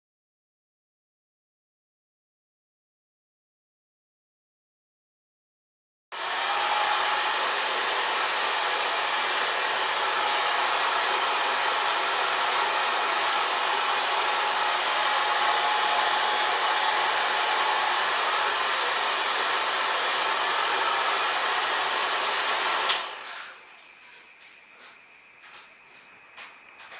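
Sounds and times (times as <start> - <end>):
hair dryer blowing: 6.2 - 23.6.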